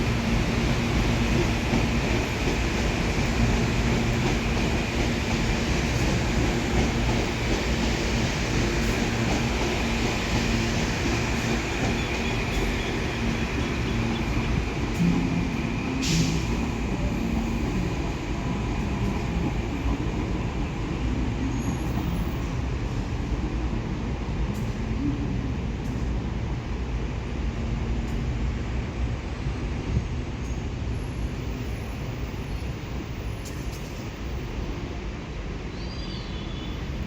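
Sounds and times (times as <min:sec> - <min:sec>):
electric train rumbling: 0:00.0 - 0:37.0
brief hiss: 0:16.0 - 0:16.7.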